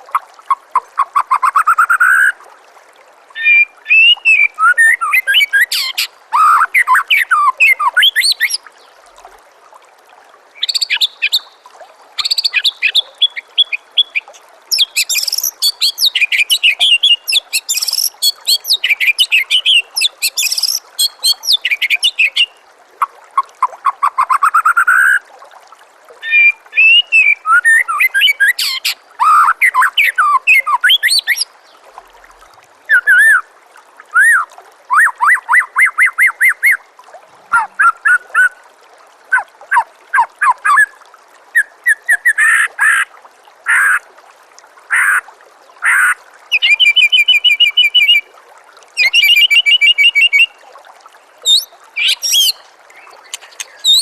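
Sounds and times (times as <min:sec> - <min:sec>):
running water trickling: 0:00.0 - 0:54.0
bird singing whistled phrases: 0:03.4 - 0:05.8, 0:26.2 - 0:31.4, 0:46.5 - 0:48.3, 0:49.0 - 0:50.6, 0:51.4 - 0:54.0.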